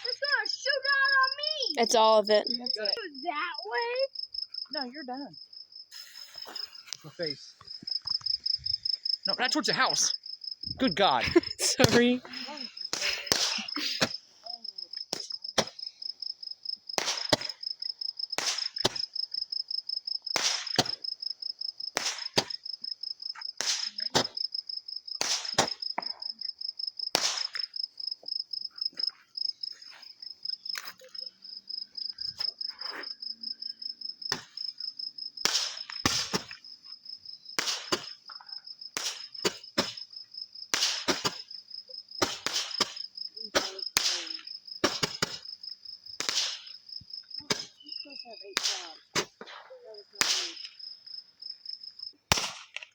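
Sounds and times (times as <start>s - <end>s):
crickets chirping: 0.0s - 52.9s
firework bangs and pops: 11.2s - 14.2s, 15.1s - 16.0s, 16.8s - 19.4s, 20.2s - 21.2s, 21.9s - 24.5s, 25.1s - 26.4s, 27.0s - 28.4s, 34.3s - 34.7s, 35.4s - 36.7s, 37.5s - 41.6s, 42.2s - 47.9s, 48.6s - 50.8s, 52.2s - 52.9s.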